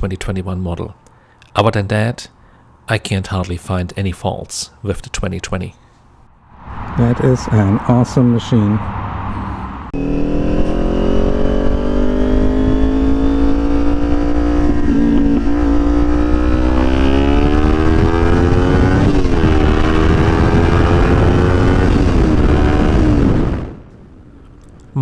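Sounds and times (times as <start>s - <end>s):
motorcycle engine accelerating: 8.8s - 23.9s.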